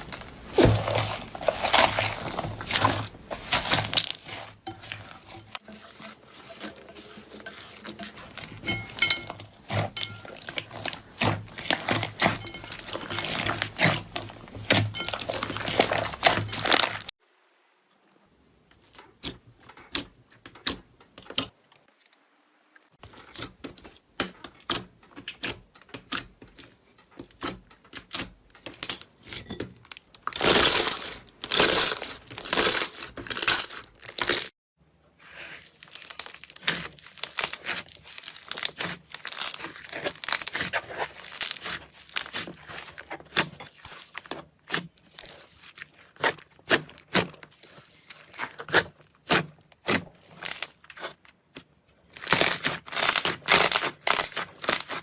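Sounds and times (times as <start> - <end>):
slime crackling and popping: 0.0 - 4.8, 8.4 - 17.1, 30.0 - 34.5, 35.4 - 55.0.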